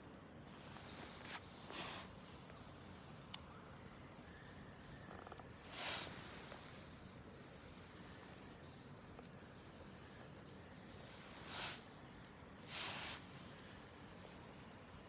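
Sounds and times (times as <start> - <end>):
campfire burning faintly: 0.0 - 15.0
light high ticks: 2.2 - 3.5
short hissing rush: 5.6 - 8.0, 11.0 - 12.0, 12.6 - 14.5.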